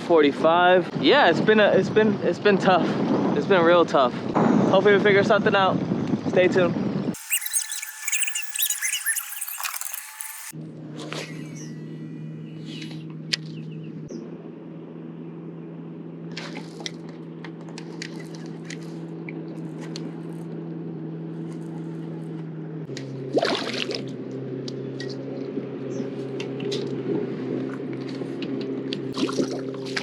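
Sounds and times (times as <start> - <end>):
small boat motor humming: 11.3 - 30.0
water splashing against hull: 29.2 - 30.0.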